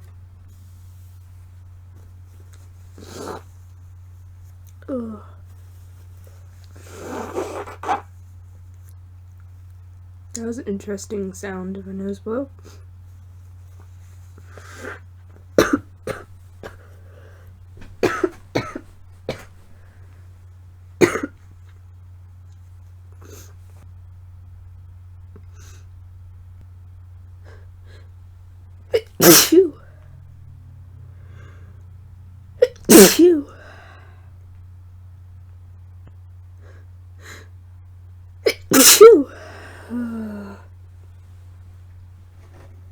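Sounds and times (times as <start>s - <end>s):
woman coughing: 15.6s - 16.9s, 18.0s - 19.6s, 21.0s - 21.4s, 28.9s - 29.8s, 32.6s - 33.6s, 38.4s - 40.6s
woman sneezing: 18.0s - 19.5s, 28.9s - 29.8s, 32.6s - 33.7s, 38.4s - 40.6s.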